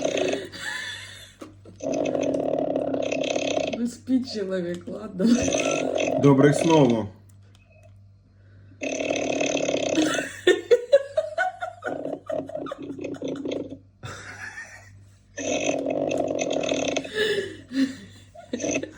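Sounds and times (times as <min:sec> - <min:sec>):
person snoring loudly: 0:00.0 - 0:03.8, 0:05.3 - 0:06.7, 0:08.8 - 0:10.3, 0:11.8 - 0:13.8, 0:15.4 - 0:18.9.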